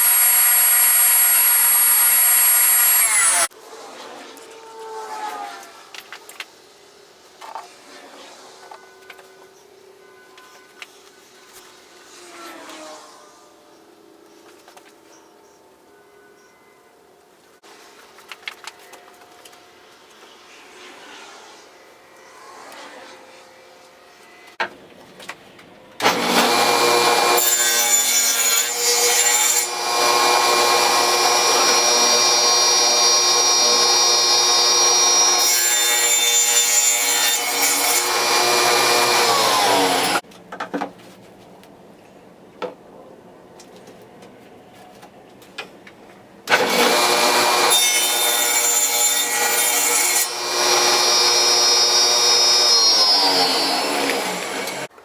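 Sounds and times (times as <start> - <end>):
power tool motor whining: 0.0 - 3.5, 29.7 - 36.5, 37.5 - 40.2, 50.1 - 54.9.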